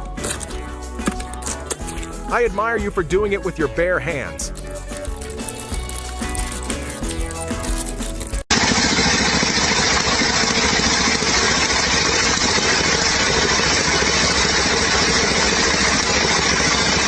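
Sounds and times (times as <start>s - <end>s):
machine running: 4.6s - 17.0s.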